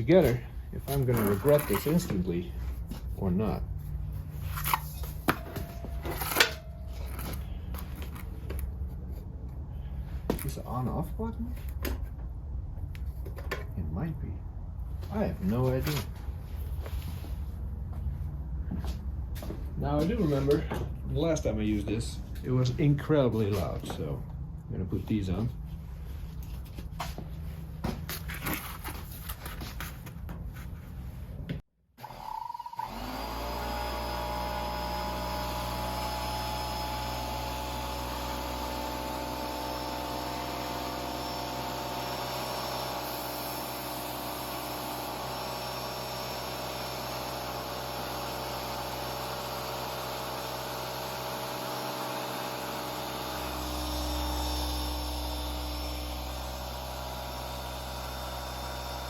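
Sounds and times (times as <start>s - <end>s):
air compressor humming and whining: 0.0s - 10.7s, 32.0s - 59.0s.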